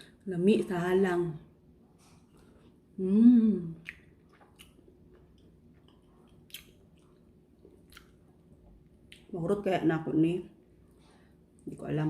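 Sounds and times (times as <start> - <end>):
person humming: 3.0 - 3.8
wet mouth clicks and smacks: 3.8 - 8.2
person chewing food: 3.8 - 9.3.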